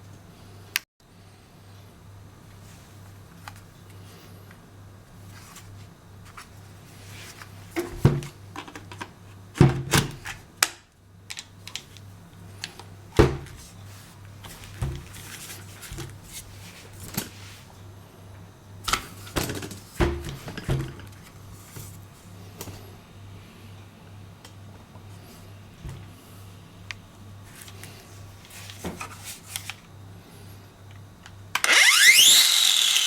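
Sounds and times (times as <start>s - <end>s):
steady low hum: 0.0s - 31.6s.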